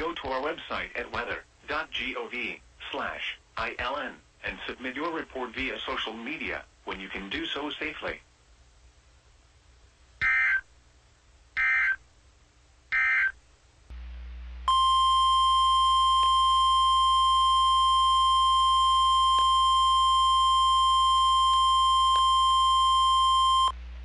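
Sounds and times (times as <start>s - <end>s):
low hum: 13.7s - 24.0s.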